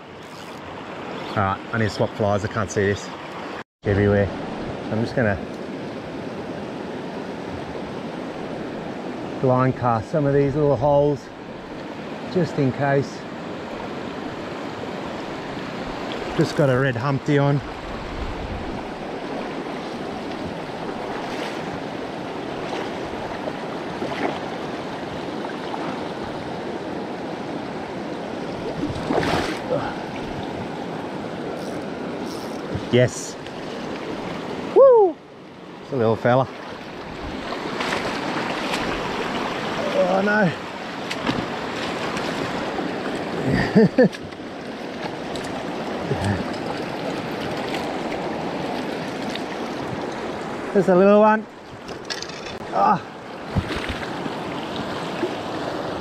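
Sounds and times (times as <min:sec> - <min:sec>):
fast-flowing river water: 0:04.3 - 0:56.0
wordless voice cry: 0:34.8 - 0:35.2
river water rushing over rocks: 0:36.5 - 0:43.5.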